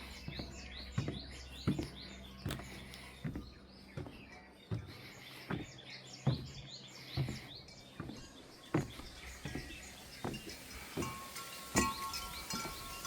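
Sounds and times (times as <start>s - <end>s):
footsteps on stone stairs: 0.0s - 13.0s
small birds chirping: 0.0s - 13.0s
wind chime ringing: 10.3s - 13.0s.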